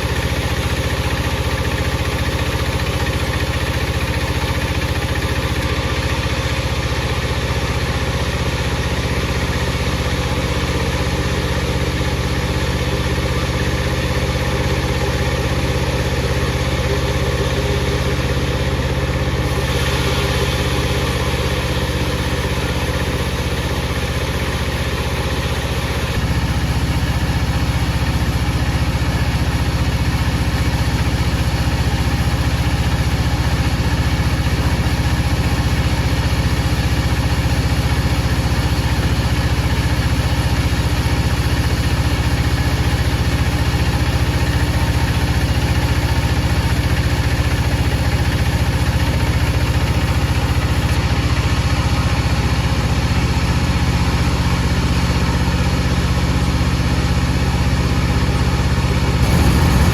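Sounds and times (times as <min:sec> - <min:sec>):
power saw humming: 0:09.7 - 0:27.2, 0:59.2 - 0:59.9.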